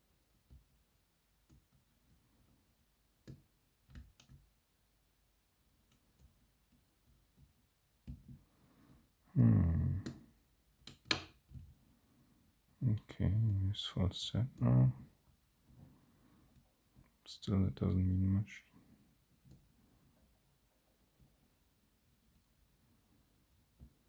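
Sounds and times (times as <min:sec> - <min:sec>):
low voiced hum: 0:09.3 - 0:10.1.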